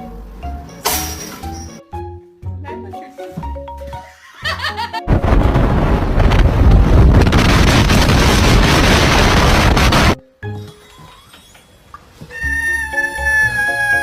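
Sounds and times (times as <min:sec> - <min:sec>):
wind buffeting microphone: 0:05.1 - 0:10.2.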